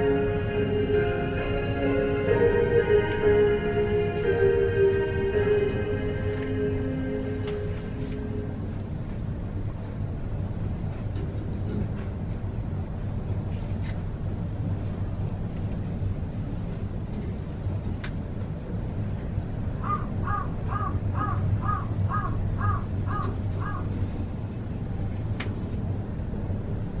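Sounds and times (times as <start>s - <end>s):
steady low hum: 0.0s - 27.0s
crow cawing: 19.8s - 23.9s.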